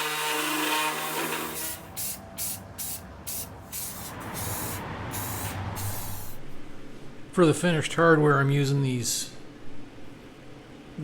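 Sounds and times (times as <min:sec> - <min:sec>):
spray paint hissing on metal: 0:01.4 - 0:06.4.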